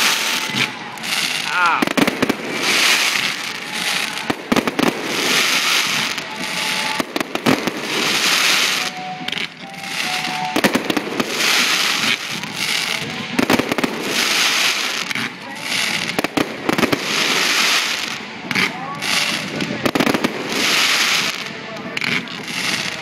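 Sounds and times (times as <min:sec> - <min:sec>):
fireworks booms and bangs: 0:00.0 - 0:23.0
fireworks crackling: 0:00.0 - 0:23.0.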